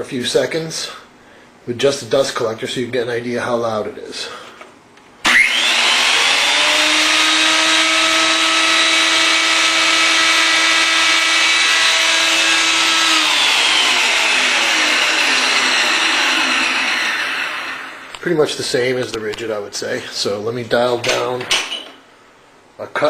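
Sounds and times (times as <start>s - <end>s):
planer whining and spinning down: 5.2s - 18.2s.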